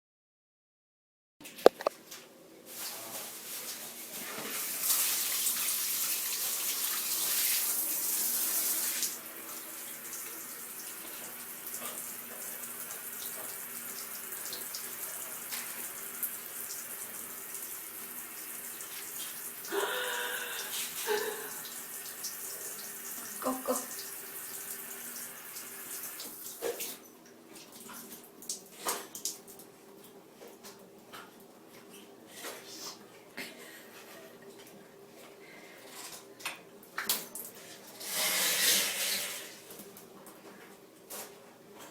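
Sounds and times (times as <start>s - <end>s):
shower head spraying water: 38.0s - 39.5s.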